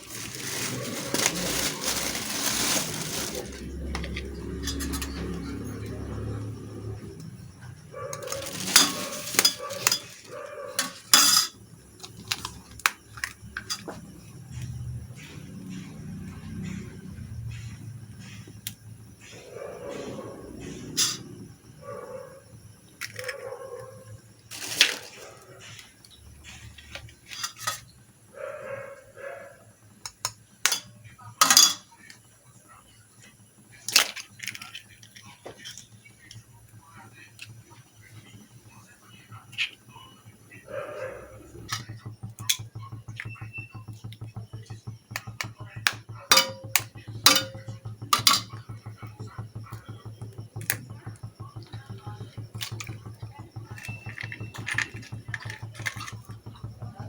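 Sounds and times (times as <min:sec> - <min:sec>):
dishes and utensils clinking: 0:00.1 - 0:05.9, 0:08.1 - 0:12.6, 0:30.1 - 0:32.0, 0:41.7 - 0:56.8
eggshells cracking on bowl rim: 0:52.5 - 0:56.9.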